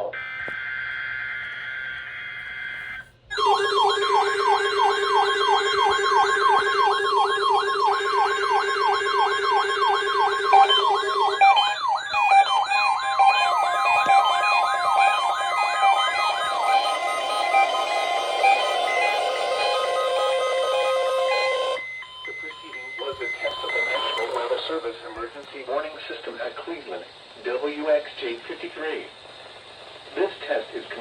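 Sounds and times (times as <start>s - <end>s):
electronic siren yelping: 0.2s - 24.3s
shifting stepped tones: 3.3s - 21.8s
steady electronic tone: 3.3s - 21.8s.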